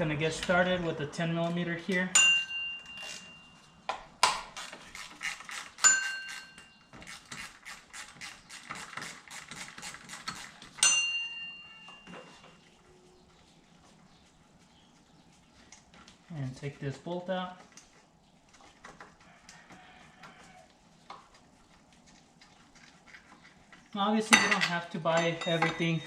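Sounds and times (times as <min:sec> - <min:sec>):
tool clinking against metal: 0:02.0 - 0:03.7, 0:05.8 - 0:06.8, 0:10.8 - 0:12.6, 0:24.2 - 0:26.0.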